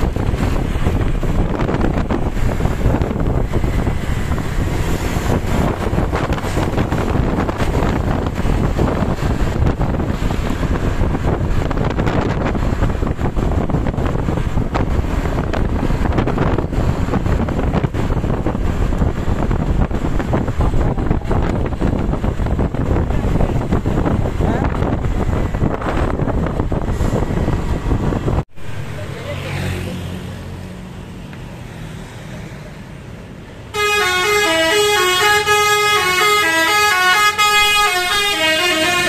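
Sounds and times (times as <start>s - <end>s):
wind buffeting microphone: 0.0s - 28.6s
moving vehicle rumble: 0.0s - 39.0s.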